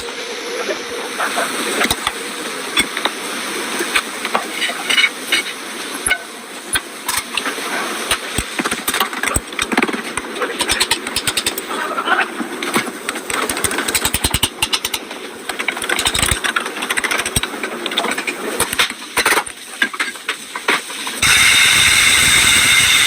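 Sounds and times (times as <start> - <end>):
hand tool clicks and knocks: 10.6 - 11.6, 13.3 - 17.5
steady hiss: 20.4 - 23.0.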